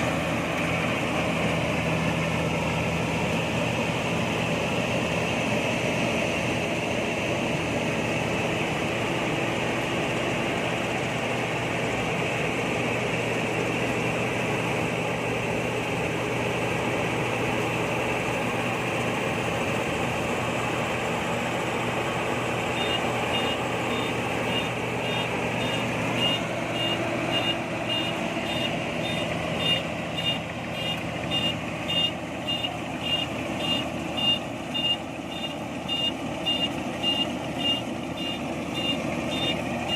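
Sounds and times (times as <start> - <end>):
combine harvester engine running: 0.0 - 39.9
reversing alarm beeping: 22.8 - 39.9.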